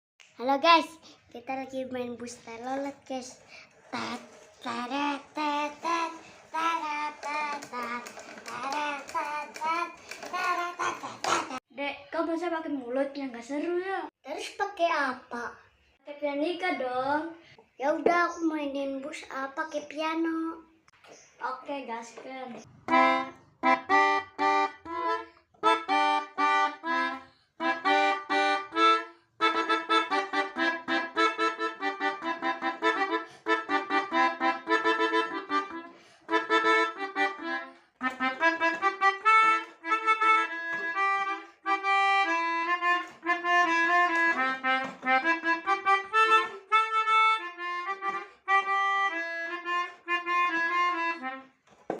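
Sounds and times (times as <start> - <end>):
melodica playing: 3.3 - 11.6, 22.8 - 52.0.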